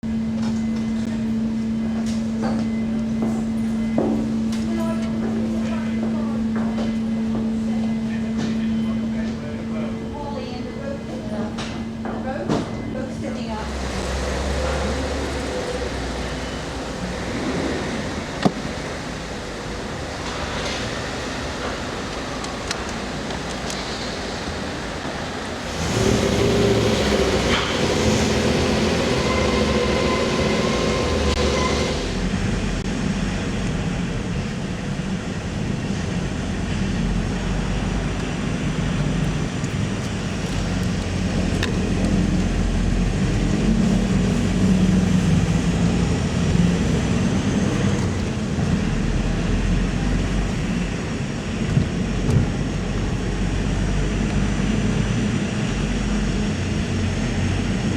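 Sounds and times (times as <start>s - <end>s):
car engine and tyre rumble: 13.8s - 57.9s
whining hum: 25.5s - 57.9s.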